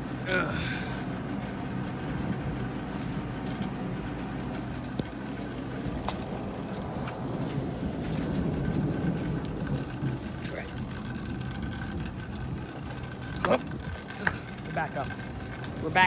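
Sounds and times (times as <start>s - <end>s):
thunderstorm rumbling: 5.8s - 15.9s.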